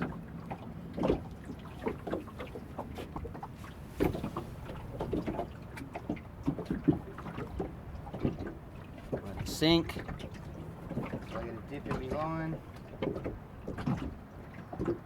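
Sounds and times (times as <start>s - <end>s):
light knocks and splashes: 0.0s - 15.0s
water lapping against boat hull: 0.0s - 15.0s.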